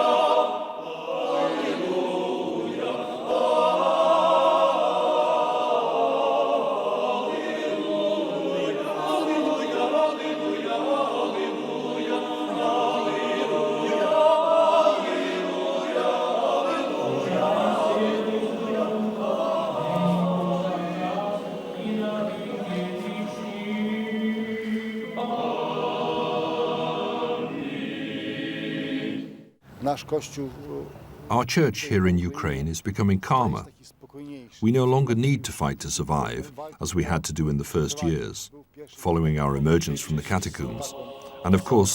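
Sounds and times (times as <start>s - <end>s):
choir singing chant: 0.0s - 29.6s, 39.8s - 41.9s.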